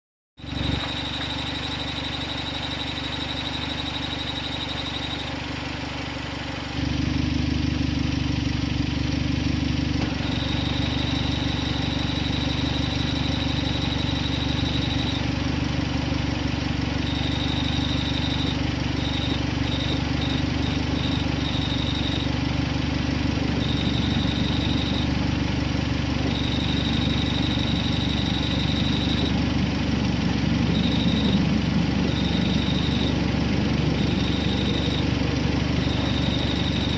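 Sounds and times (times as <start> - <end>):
high-pitched cricket-like chirp: 0.4 - 5.4, 10.3 - 15.3, 17.0 - 22.3, 23.5 - 25.1, 26.3 - 29.4, 30.6 - 36.9
car engine idling: 0.4 - 36.9.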